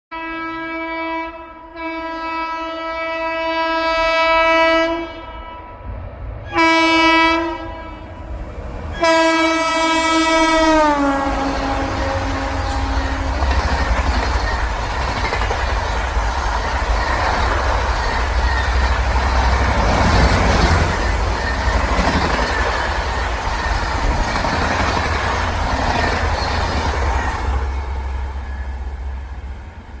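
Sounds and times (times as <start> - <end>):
locomotive horn blasts: 0.1 - 5.8, 6.4 - 8.2, 8.9 - 13.4
train coaches rumbling and clattering: 8.0 - 30.0.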